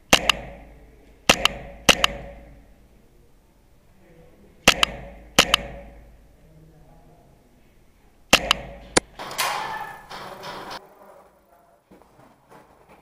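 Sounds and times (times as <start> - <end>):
airsoft rifle firing cracks: 8.3 - 10.8.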